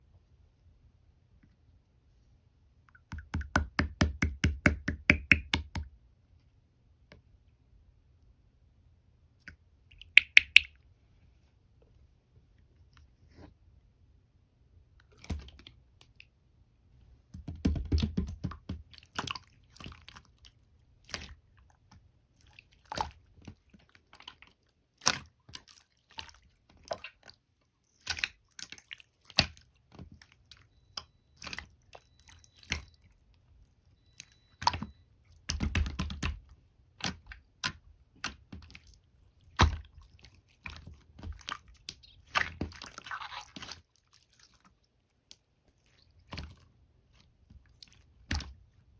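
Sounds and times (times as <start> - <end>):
wet squishy chewing: 18.8 - 48.9.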